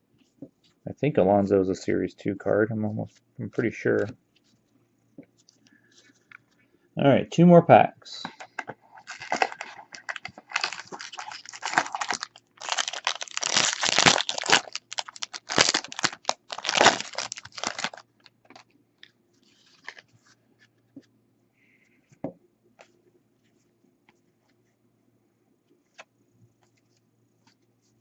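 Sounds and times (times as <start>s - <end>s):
faint rustles and taps: 4.0s - 6.6s
foil wrapper crinkling: 8.9s - 20.1s.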